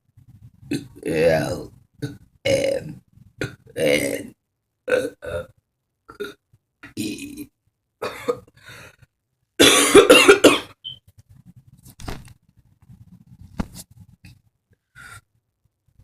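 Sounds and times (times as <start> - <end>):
woman coughing: 8.0 - 8.4, 9.6 - 10.8.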